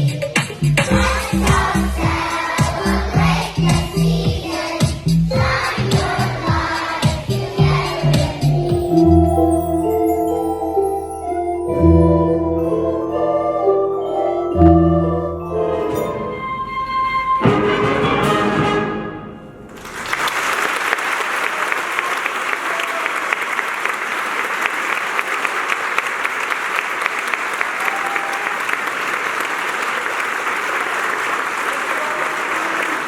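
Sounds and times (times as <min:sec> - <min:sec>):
ensemble final chord ringing: 0:08.6 - 0:17.0
audience applause: 0:19.7 - 0:33.0.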